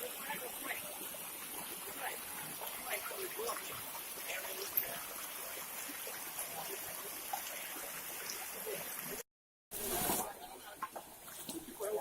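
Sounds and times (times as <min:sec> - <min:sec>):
stream water rushing: 0:00.0 - 0:09.2.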